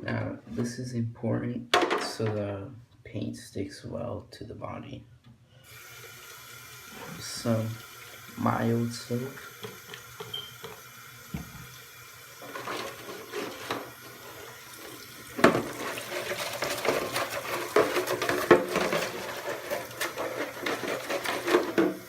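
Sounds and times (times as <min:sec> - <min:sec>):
tap water running and splashing: 0:05.7 - 0:22.0
rubbing against plastic: 0:12.4 - 0:14.7, 0:15.3 - 0:22.0.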